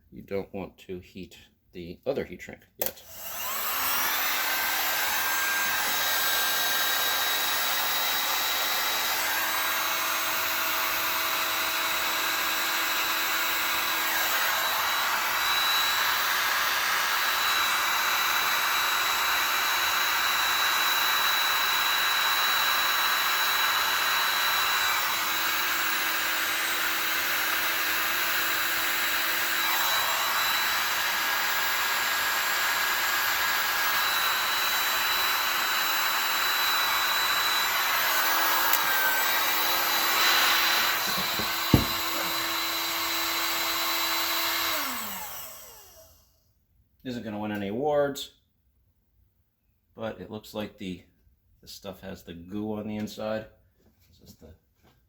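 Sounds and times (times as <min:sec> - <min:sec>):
heat gun blowing air: 0:02.8 - 0:46.1.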